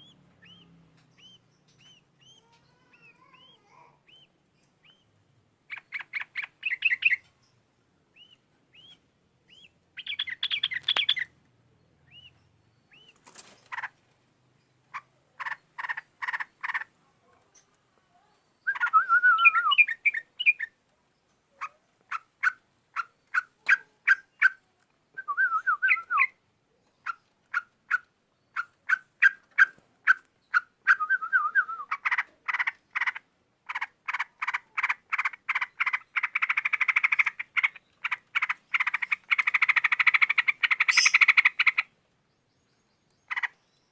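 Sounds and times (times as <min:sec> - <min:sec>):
bird song: 0:00.0 - 0:43.9.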